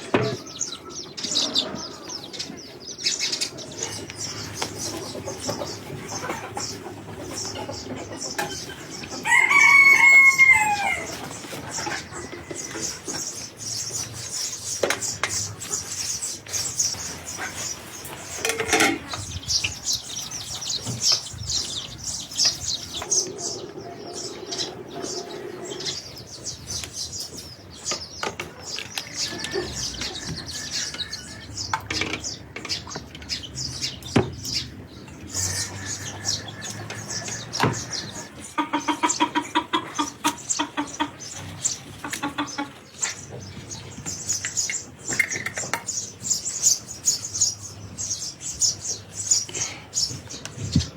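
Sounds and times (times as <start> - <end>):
small birds chirping: 0.0 - 50.9
rooster crowing: 9.2 - 11.2.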